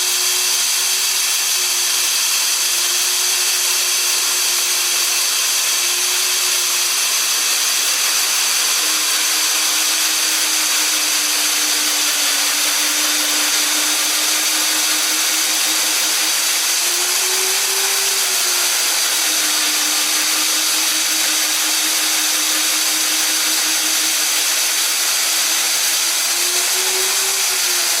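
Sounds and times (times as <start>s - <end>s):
core drill boring into concrete: 0.0s - 28.0s.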